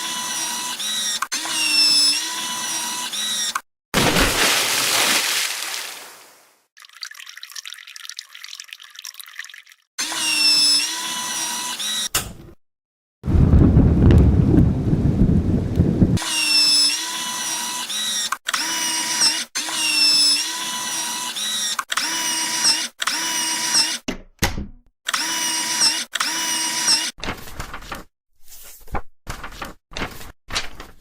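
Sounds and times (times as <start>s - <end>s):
power drill whining in bursts: 0.0s - 3.6s, 10.0s - 12.1s, 16.2s - 24.0s, 25.1s - 27.1s
low rumbling noise: 13.3s - 16.2s.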